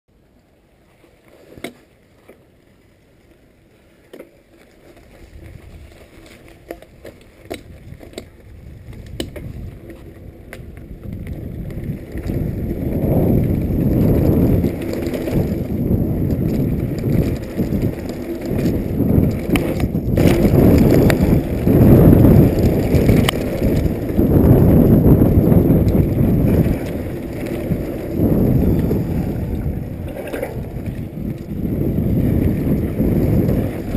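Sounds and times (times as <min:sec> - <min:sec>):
bike rattling and knocking: 0:05.3 - 0:33.9
wind rushing over microphone: 0:07.6 - 0:33.9.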